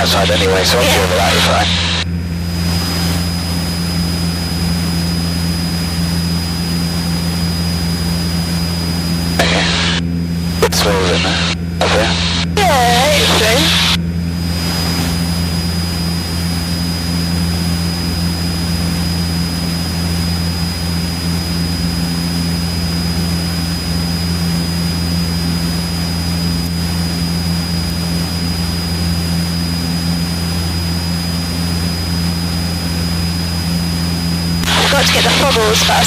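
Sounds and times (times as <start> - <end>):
high-pitched whine: 0.0 - 2.1, 9.1 - 14.0, 34.6 - 36.0
propeller plane engine droning: 0.0 - 36.0.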